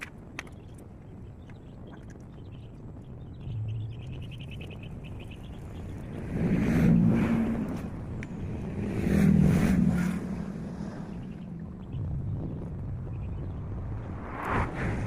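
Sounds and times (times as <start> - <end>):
motor vehicles passing by: 3.3 - 15.0.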